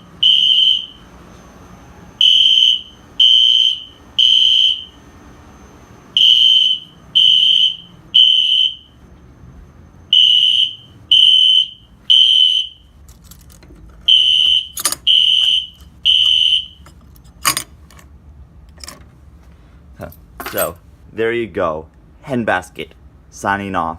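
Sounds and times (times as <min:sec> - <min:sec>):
high-pitched alarm horn blasts: 0:00.0 - 0:13.0, 0:14.1 - 0:16.8.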